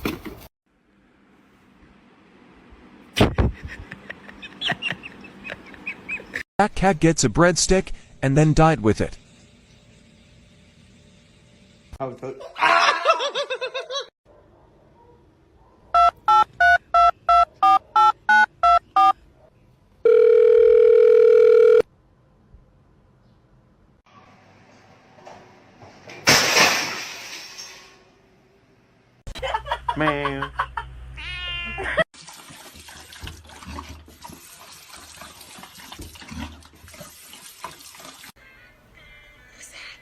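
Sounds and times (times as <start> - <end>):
keypad touch tone beeps: 16.0 - 19.2.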